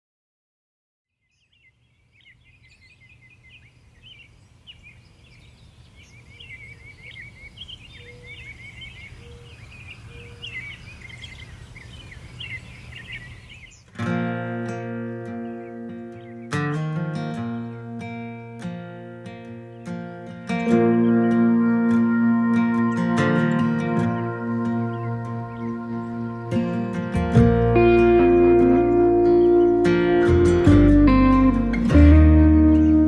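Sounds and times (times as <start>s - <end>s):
small birds chirping: 1.2s - 14.0s, 20.6s - 22.0s, 23.4s - 33.0s
plucked acoustic guitar music: 13.9s - 33.0s.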